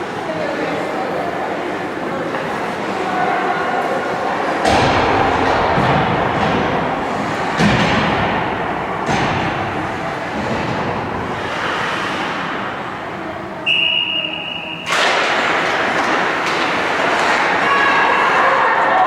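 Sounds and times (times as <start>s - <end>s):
ice rink crowd din: 0.0s - 19.0s
referee's whistle blast: 13.6s - 14.9s.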